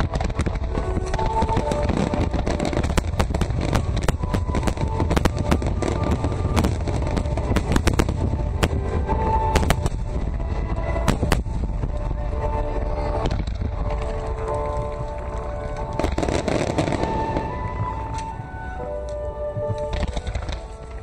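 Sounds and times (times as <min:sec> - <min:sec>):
fireworks bursts rumbling: 0:00.0 - 0:21.0
fireworks crackling pops: 0:00.0 - 0:21.0.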